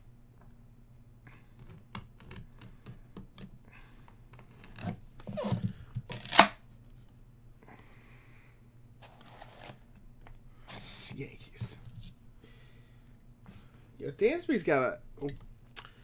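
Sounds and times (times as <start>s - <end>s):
packaging tearing: 6.1s - 6.6s
cards and packaging rustling: 9.0s - 9.9s.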